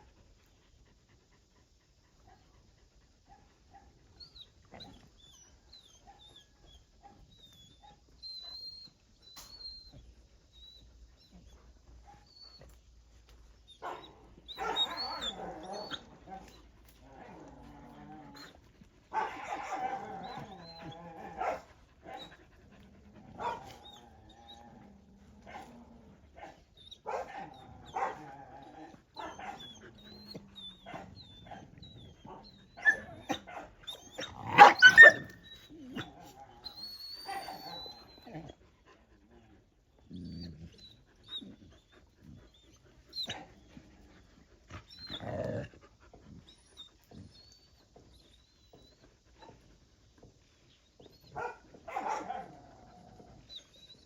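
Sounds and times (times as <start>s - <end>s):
dogs whining and yelping: 0.0s - 54.0s
dogs barking: 13.8s - 16.5s, 19.1s - 20.6s, 21.2s - 22.3s, 23.3s - 23.8s, 26.4s - 28.4s, 32.3s - 35.4s, 51.3s - 52.6s.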